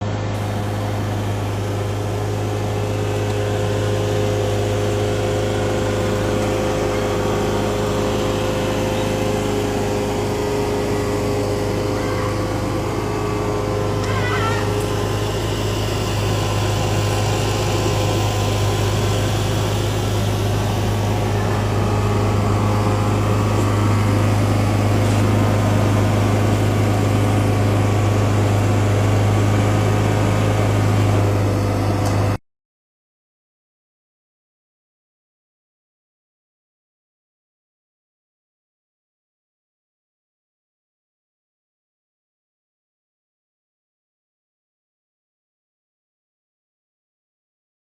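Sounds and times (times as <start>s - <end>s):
generator engine hum: 0.0s - 32.4s.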